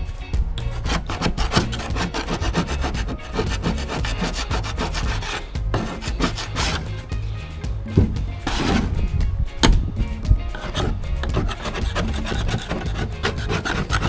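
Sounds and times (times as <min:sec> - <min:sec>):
hand scraper rasping wood: 0:00.8 - 0:06.8, 0:10.5 - 0:14.0.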